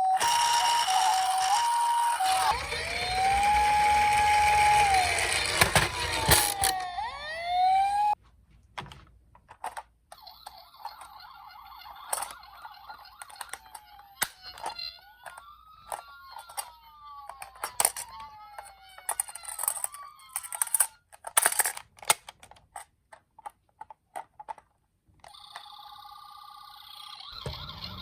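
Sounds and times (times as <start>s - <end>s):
toy electronic siren wailing: 0.0s - 8.2s, 10.2s - 21.0s, 25.2s - 28.0s.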